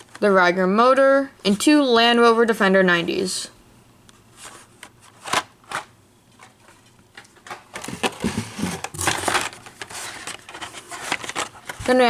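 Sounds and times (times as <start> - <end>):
plastic and card rustling: 4.4 - 12.0.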